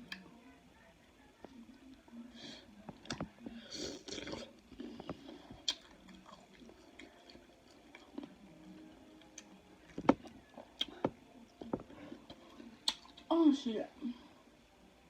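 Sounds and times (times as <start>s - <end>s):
person chewing food: 2.9s - 8.5s, 9.2s - 13.2s
wet mouth clicks and smacks: 12.8s - 13.2s.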